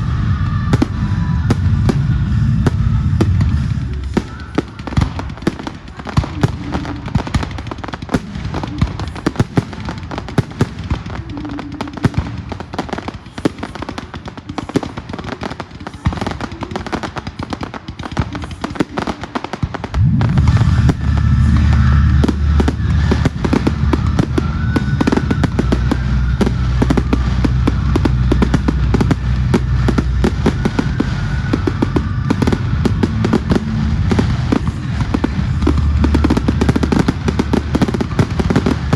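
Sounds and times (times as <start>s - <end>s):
music with heavy bass: 0.0s - 5.5s, 20.0s - 38.9s
fireworks crackling and banging: 0.0s - 38.9s.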